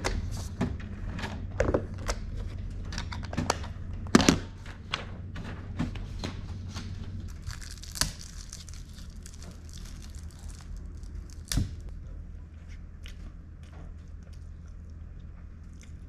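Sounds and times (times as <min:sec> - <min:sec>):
crinkling and tearing: 0:06.6 - 0:11.9.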